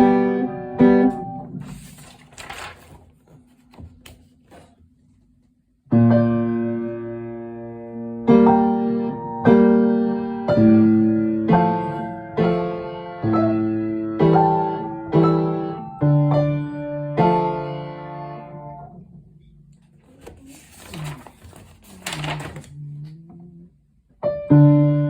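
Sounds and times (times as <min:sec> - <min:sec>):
piano chords: 0:05.9 - 0:19.0.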